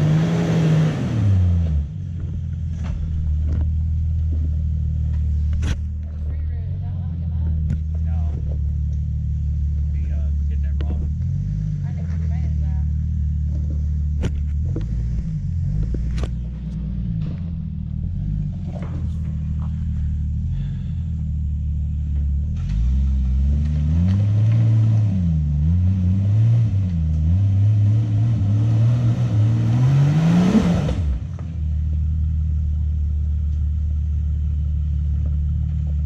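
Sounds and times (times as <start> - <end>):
off-road engine revving: 0.0 - 36.0
knocks and clatters: 2.1 - 6.5, 13.4 - 20.1.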